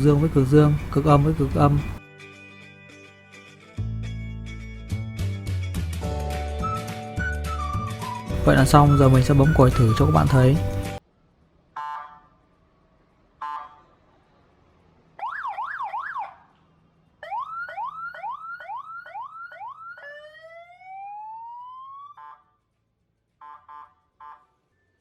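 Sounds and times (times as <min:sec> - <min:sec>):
electronic siren: 0:15.2 - 0:16.4, 0:17.2 - 0:22.5.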